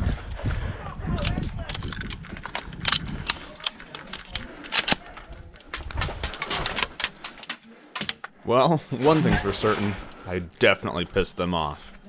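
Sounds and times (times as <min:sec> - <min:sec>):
airsoft gunfire clicks and snaps: 0:01.2 - 0:08.3.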